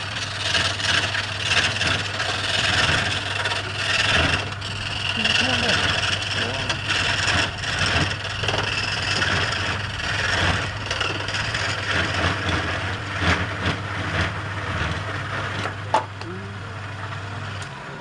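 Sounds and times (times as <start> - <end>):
turning tool scraping wood: 0.0 - 17.8
wood lathe motor hum: 0.0 - 18.0.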